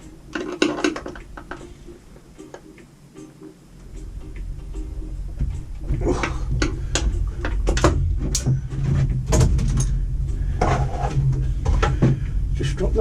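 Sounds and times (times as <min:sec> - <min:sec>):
clicks and knocks of tools: 0:00.3 - 0:01.6
low rumble: 0:03.8 - 0:13.0.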